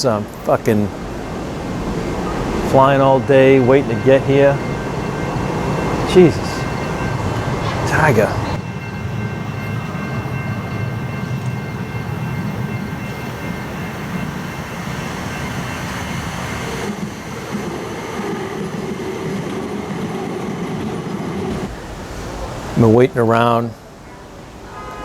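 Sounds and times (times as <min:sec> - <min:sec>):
passing vehicle rumble: 0:00.0 - 0:08.6, 0:21.5 - 0:25.0.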